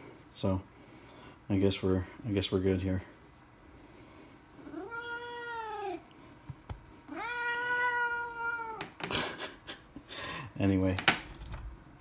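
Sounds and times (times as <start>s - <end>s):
cat meowing: 4.7s - 6.0s, 7.1s - 8.8s.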